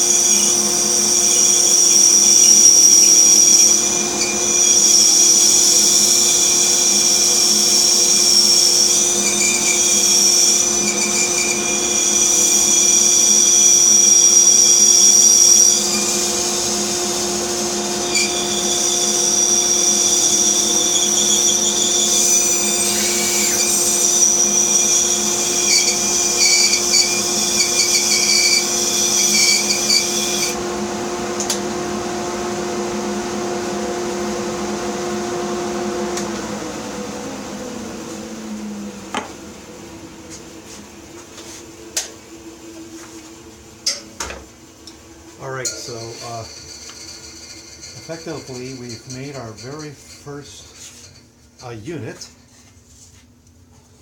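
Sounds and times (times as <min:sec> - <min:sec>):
bandsaw cutting wood: 0:00.0 - 0:36.7, 0:48.0 - 0:49.6.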